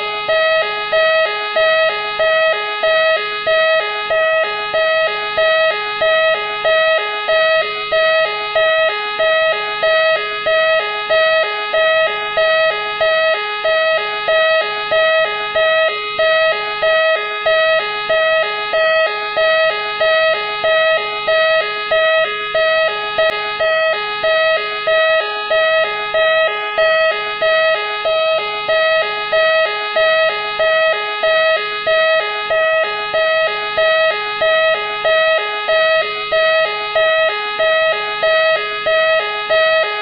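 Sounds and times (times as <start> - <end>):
police siren two-tone wail: 0.0 - 40.0.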